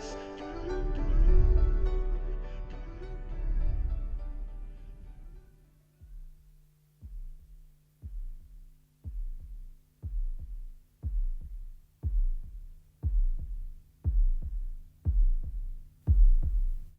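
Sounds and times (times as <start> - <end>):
held low chord: 0.0 - 8.5
bass double thump: 3.5 - 5.0, 6.0 - 16.9.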